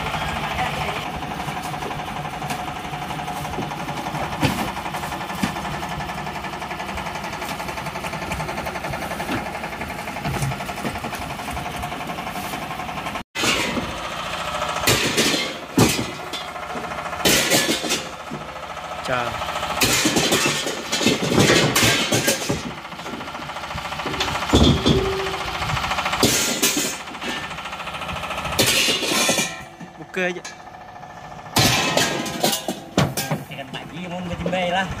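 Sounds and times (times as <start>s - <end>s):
diesel boat engine running: 0.0s - 35.0s
sharp knocks and clatter: 1.6s - 6.2s, 14.8s - 18.5s, 19.8s - 27.8s, 31.5s - 34.7s.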